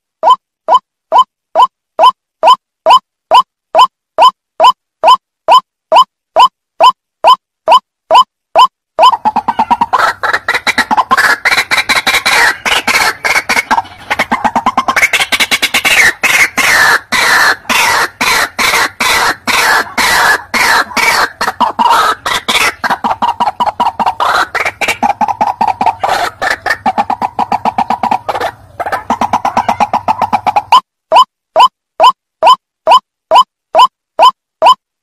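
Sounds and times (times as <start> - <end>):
waterhen calling: 9.0 - 30.8.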